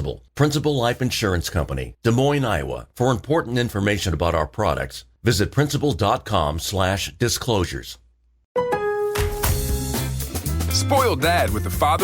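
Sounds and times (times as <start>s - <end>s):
commercial background music: 8.6s - 12.0s.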